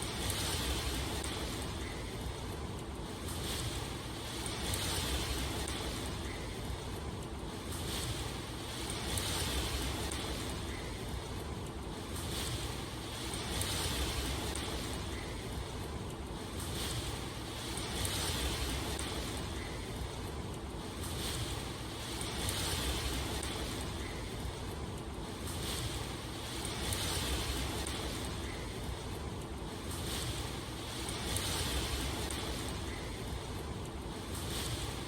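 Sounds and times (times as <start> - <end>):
steady rainfall: 0.0 - 35.0.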